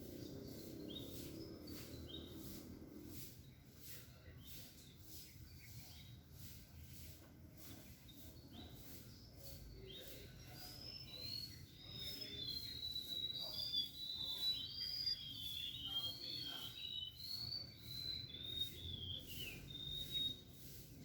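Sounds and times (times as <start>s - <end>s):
small birds chattering: 0.0s - 21.0s.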